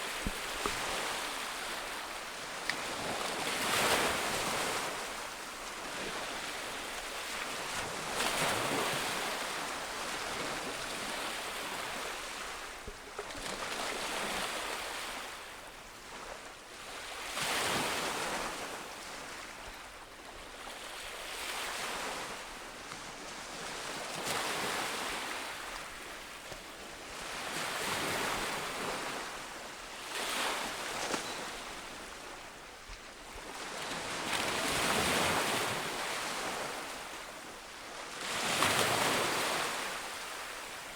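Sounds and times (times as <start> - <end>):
wind: 0.0 - 40.9
ocean waves breaking on beach: 23.3 - 40.9.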